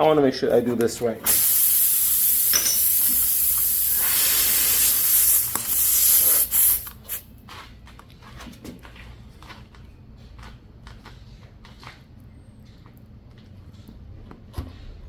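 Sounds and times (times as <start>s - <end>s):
air hissing out of a tire: 1.2s - 7.2s.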